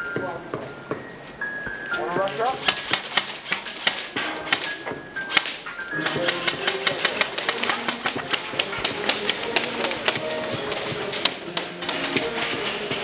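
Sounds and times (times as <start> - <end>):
pellets striking hard surfaces: 2.0 - 13.0
airsoft guns firing: 2.2 - 13.0.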